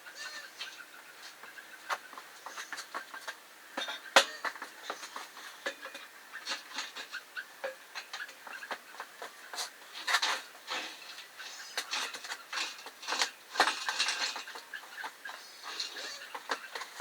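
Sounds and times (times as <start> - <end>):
castors squeaking: 6.3 - 17.0.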